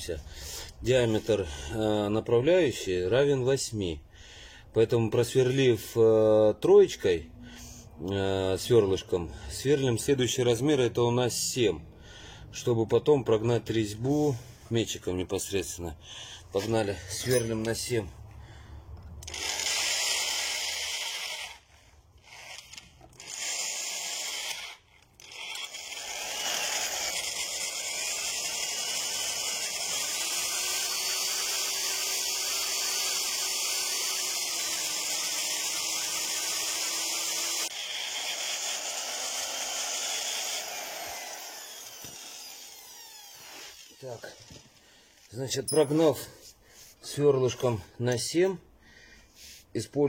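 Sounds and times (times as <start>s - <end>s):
electric drill boring into metal: 19.2s - 44.6s.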